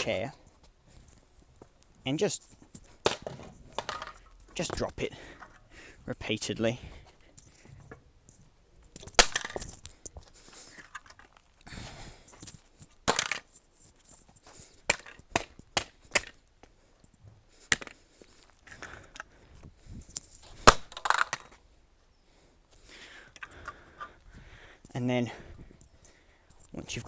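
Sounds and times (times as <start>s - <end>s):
graphics card clattering on floor: 2.8s - 4.9s.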